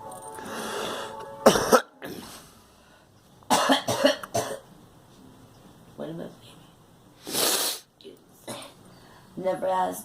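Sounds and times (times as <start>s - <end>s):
girl coughing: 1.4s - 2.2s, 3.5s - 4.6s.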